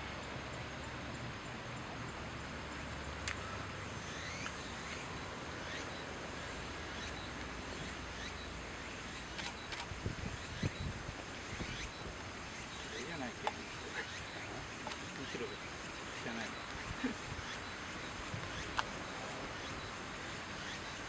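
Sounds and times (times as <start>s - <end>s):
steady background rush: 3.6s - 21.0s
sharp click: 9.4s - 9.9s.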